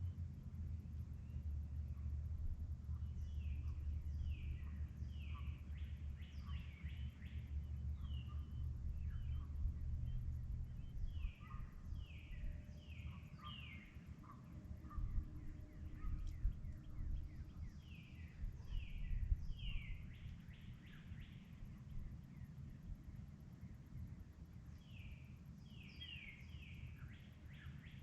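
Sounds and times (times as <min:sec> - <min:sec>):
low background rumble: 0:00.0 - 0:28.0
bird chirps: 0:02.9 - 0:21.5
songbirds whistling: 0:03.0 - 0:21.5, 0:24.8 - 0:28.0.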